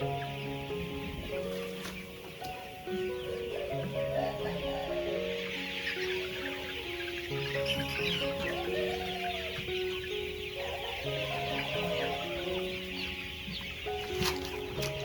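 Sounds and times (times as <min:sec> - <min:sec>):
chickens clucking: 0:00.0 - 0:15.0
slow melodic background music: 0:00.0 - 0:15.0.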